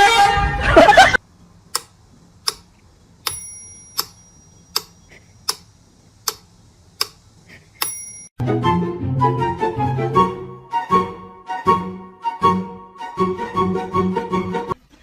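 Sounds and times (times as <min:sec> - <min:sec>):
clock ticking: 0:01.7 - 0:07.2.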